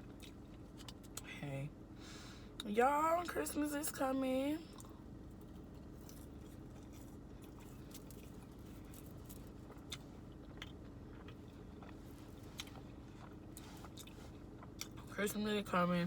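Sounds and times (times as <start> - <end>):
person chewing food: 0.0 - 1.3, 4.7 - 15.1
steady low hum: 0.0 - 16.0.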